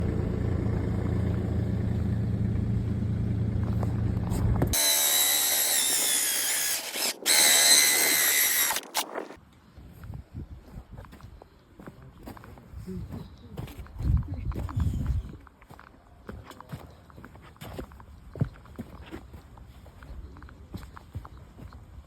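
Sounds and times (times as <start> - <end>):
motor humming: 3.3 - 9.4
power tool whine: 4.6 - 9.4.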